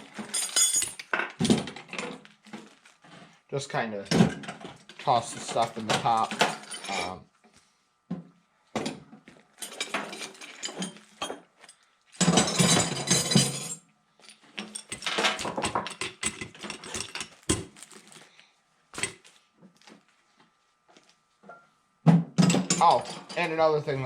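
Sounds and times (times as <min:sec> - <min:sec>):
hand tools clattering into toolbox: 0:04.1 - 0:07.2, 0:12.2 - 0:13.8, 0:22.4 - 0:23.6.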